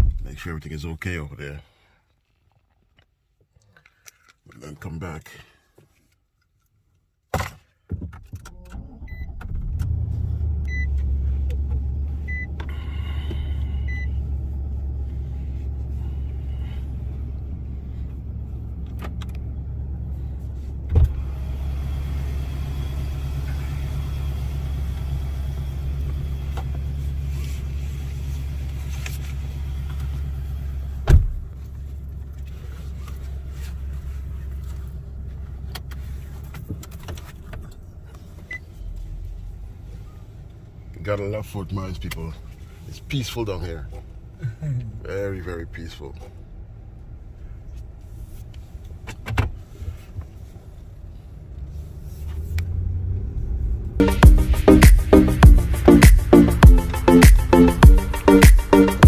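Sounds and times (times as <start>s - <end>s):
car interior engine rumble: 8.1s - 59.0s
car warning chime beeping: 10.6s - 11.0s, 12.2s - 12.6s, 13.7s - 14.2s.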